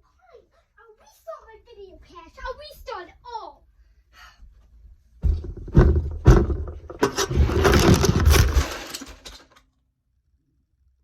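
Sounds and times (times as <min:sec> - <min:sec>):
crackling and knocking handling noise: 0:05.2 - 0:09.7.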